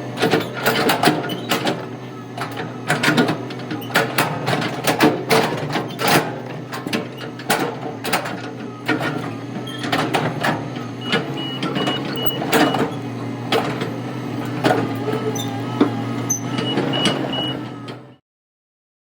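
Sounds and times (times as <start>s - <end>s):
heavy equipment running: 0.0s - 18.2s
backup alarm beeps: 10.8s - 13.1s, 15.4s - 17.9s.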